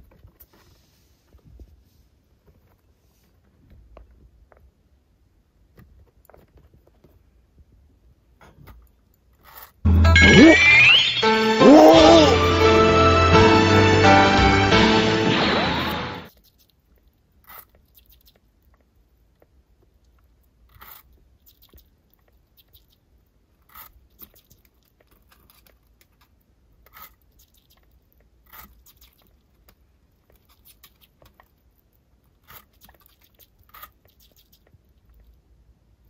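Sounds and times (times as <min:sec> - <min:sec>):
small animal crunching apple: 0:08.6 - 0:09.8, 0:16.3 - 0:35.5
music: 0:09.9 - 0:16.3.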